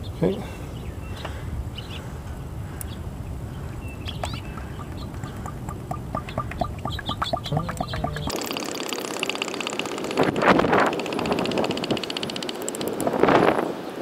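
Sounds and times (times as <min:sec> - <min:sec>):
bottle gurgling glugs: 0:04.4 - 0:10.4
oil pouring through funnel: 0:04.8 - 0:10.3.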